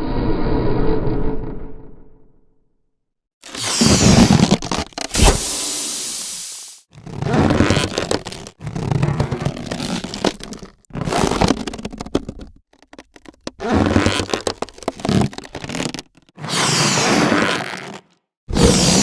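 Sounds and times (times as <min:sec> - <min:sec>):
wood creaking: 0:07.0 - 0:16.4.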